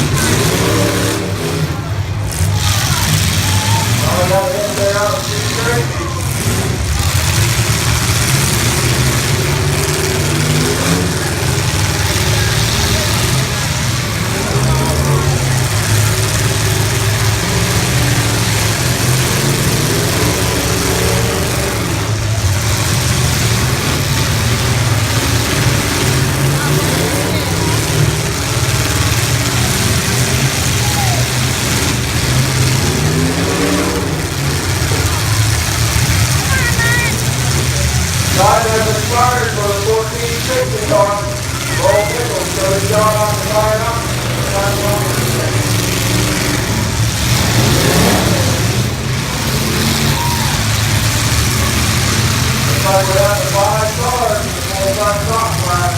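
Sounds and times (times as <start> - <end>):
race car engines droning: 0.0 - 55.9.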